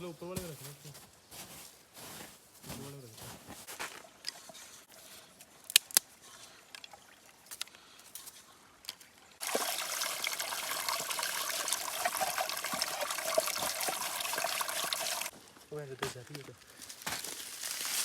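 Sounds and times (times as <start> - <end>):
water trickling and splashing: 3.6 - 15.4, 17.2 - 18.0.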